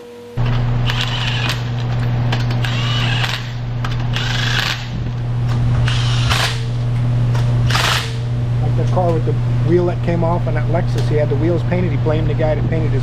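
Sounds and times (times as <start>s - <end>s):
low machine hum: 0.0s - 13.0s
power tool running in bursts: 0.5s - 6.8s, 7.6s - 8.3s.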